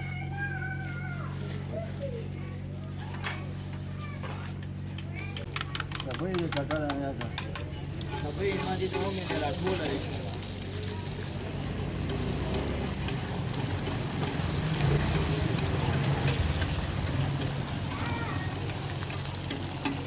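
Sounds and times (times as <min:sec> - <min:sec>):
street noise hum: 0:00.0 - 0:20.0
food sizzling on a griddle: 0:08.1 - 0:20.0.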